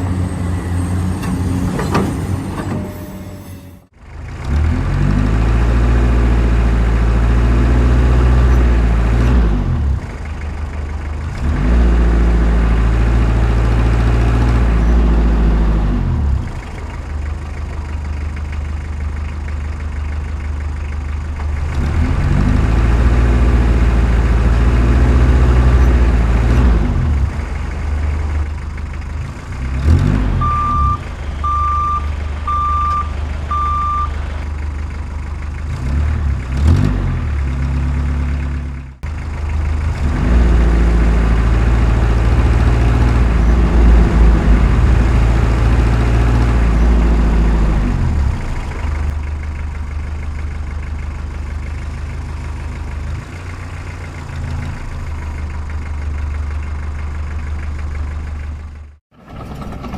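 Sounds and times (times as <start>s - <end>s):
heavy diesel engine revving: 0.0s - 3.1s, 3.9s - 59.9s
truck reversing beeper: 0.0s - 3.9s, 30.0s - 34.4s, 40.8s - 49.1s.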